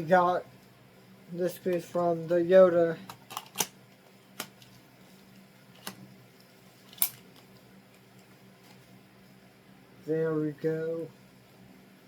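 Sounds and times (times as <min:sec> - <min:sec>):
plastic parts clicking together: 0:03.1 - 0:03.7.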